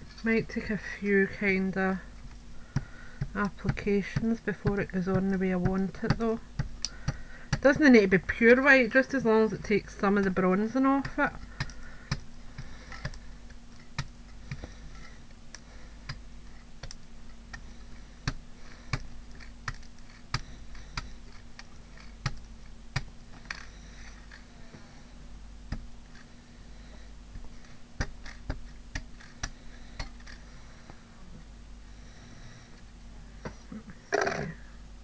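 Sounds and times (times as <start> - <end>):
faint steady hum: 0.0 - 35.0.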